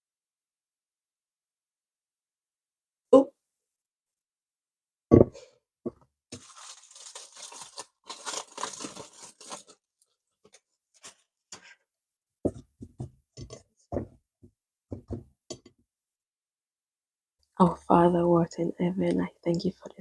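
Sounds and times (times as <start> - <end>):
packaging thump: 6.4 - 9.8
packaging tearing and crinkling: 6.4 - 11.3.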